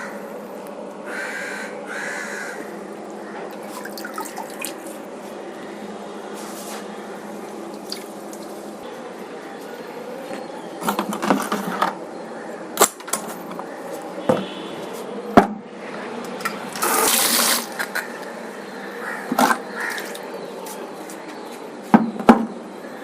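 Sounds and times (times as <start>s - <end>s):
water sloshing in fish tank: 3.4s - 5.2s, 7.6s - 8.8s.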